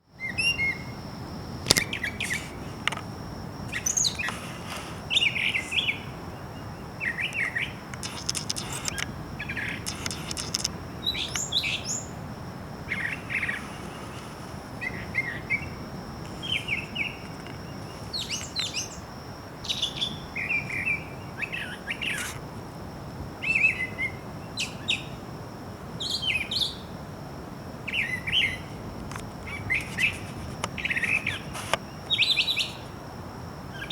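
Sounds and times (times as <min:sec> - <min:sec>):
songbird chirping: 0:03.6 - 0:12.2, 0:12.9 - 0:22.1.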